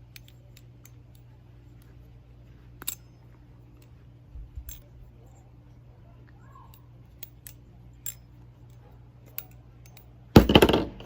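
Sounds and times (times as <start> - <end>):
sharp metal clicks: 0.0 - 1.9.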